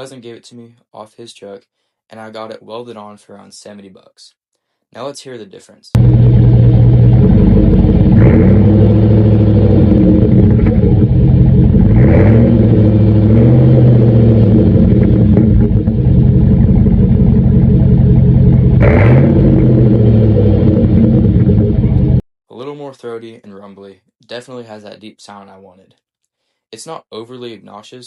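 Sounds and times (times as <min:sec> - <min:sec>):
truck engine idling: 0:06.0 - 0:13.3, 0:13.9 - 0:22.2
engine revving: 0:06.0 - 0:22.2.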